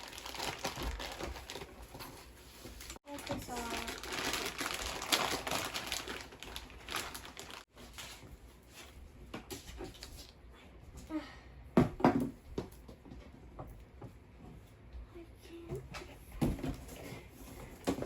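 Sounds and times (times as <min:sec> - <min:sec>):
packaging crinkling and rustling: 0:00.0 - 0:08.2.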